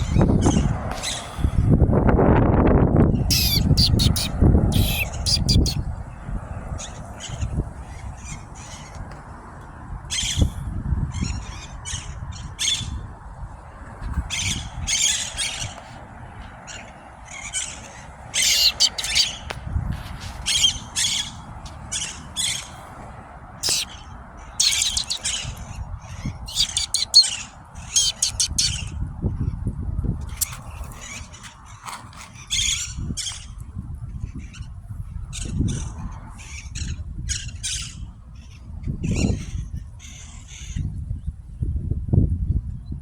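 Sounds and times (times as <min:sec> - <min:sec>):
steady background hum: 0:00.0 - 0:29.4
parrots squawking: 0:03.3 - 0:05.8, 0:16.7 - 0:19.5, 0:23.6 - 0:28.9.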